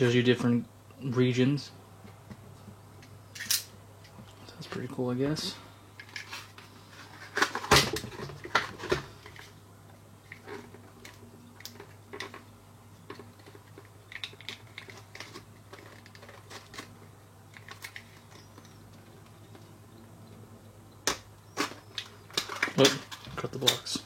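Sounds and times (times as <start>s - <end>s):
low steady hum: 0.0s - 24.0s
cardboard and paper rustling: 13.1s - 19.7s.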